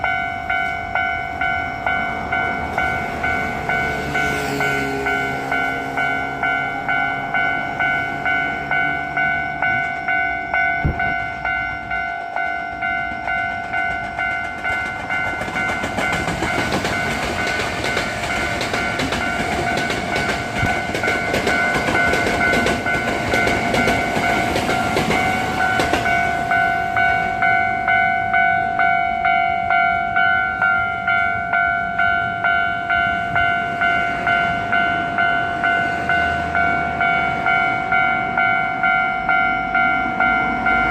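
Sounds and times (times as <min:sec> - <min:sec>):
level crossing warning bell: 0:00.0 - 0:40.9
train wheels rumbling on rails: 0:00.0 - 0:40.9.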